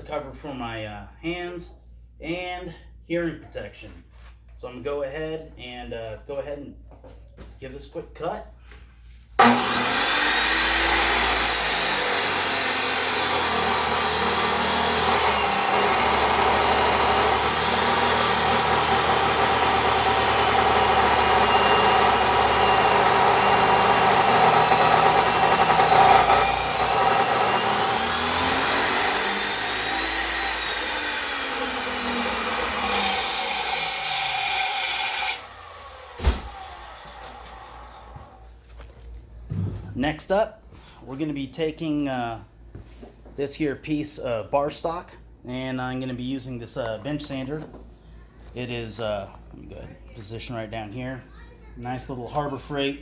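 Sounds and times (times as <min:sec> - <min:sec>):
power tool cutting metal: 0:09.4 - 0:37.9.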